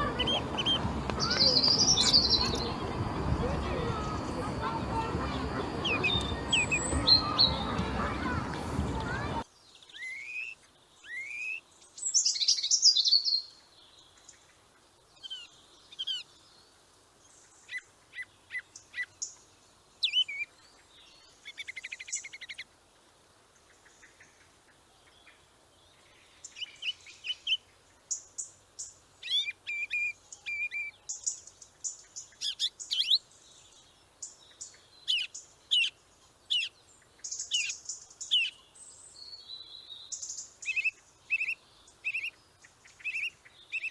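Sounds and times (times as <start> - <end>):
buzzy bird trill: 0.0 - 9.4
songbirds chirping and whistling: 0.0 - 14.2, 28.8 - 43.9.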